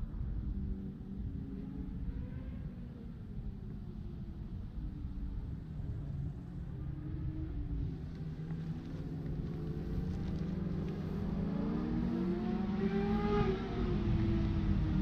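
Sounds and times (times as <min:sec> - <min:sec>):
race car engines rumbling: 0:00.0 - 0:15.0
engine rising in pitch: 0:09.9 - 0:15.0.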